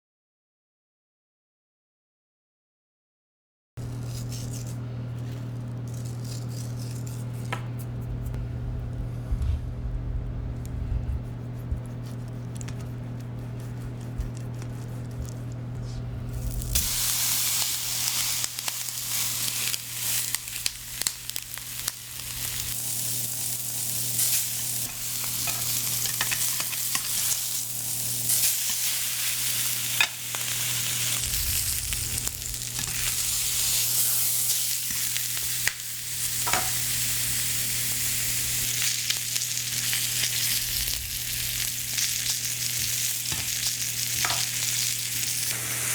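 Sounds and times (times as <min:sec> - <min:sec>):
steady low hum: 0:03.8 - 0:45.8
steak sizzling on grill pan: 0:16.4 - 0:45.9.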